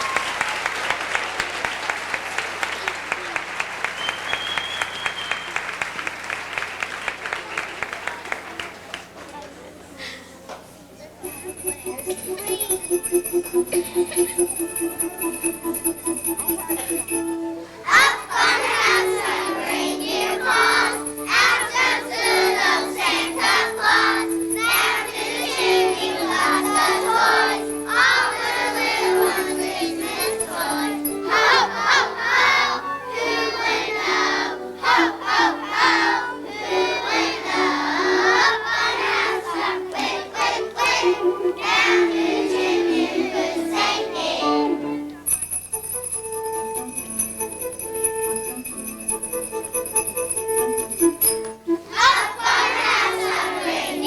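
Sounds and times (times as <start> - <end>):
jingling bells: 11.2 - 32.8, 45.2 - 54.0
melodic accompaniment: 11.2 - 38.6, 39.2 - 54.0
children singing: 17.8 - 45.0, 51.8 - 54.0.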